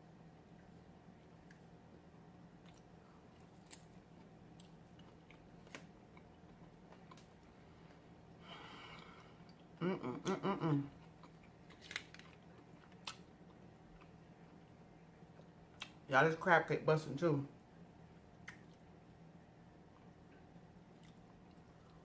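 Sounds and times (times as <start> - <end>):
person chewing crunchy food: 1.1 - 9.8, 10.8 - 16.0, 19.8 - 22.0
person humming: 9.8 - 10.9.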